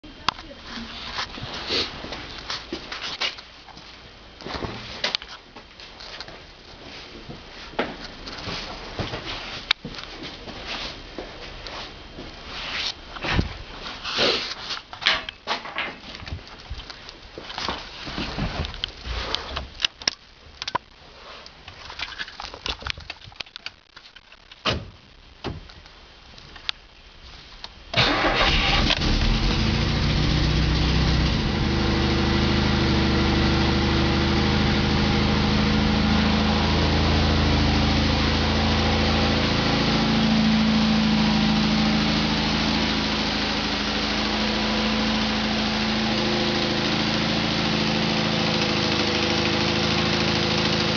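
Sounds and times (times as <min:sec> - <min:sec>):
car engine idling: 0:28.0 - 0:50.9.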